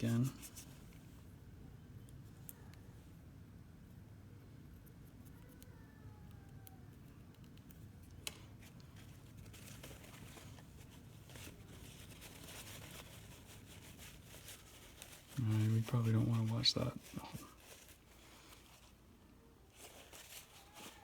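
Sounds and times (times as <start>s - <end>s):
faint scraping and rubbing: 8.6s - 19.1s, 19.7s - 21.0s.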